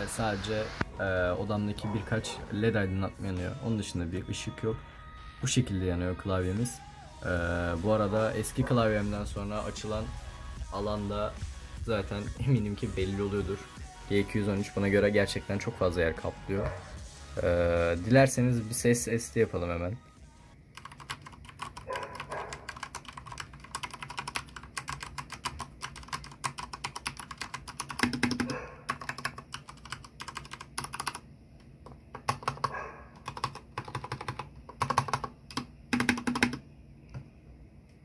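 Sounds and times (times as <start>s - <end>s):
mechanical keyboard typing: 20.7s - 31.2s, 31.8s - 36.6s.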